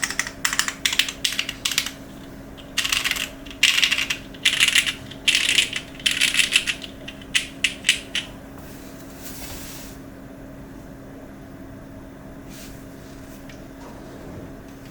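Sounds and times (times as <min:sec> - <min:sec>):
mechanical keyboard typing: 0:00.0 - 0:08.3.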